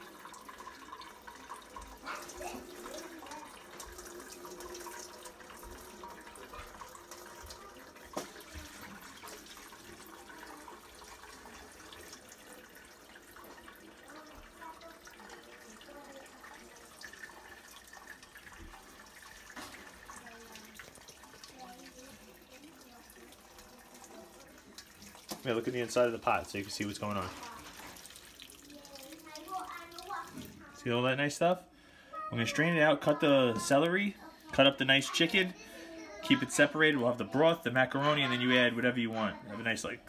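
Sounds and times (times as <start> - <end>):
liquid trickling through strainer: 0.0 - 30.8.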